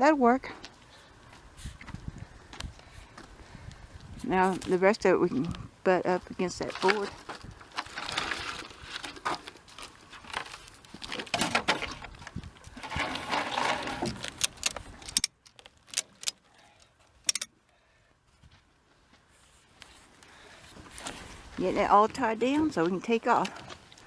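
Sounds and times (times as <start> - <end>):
wooden boards clattering: 10.2 - 12.2, 12.8 - 14.4.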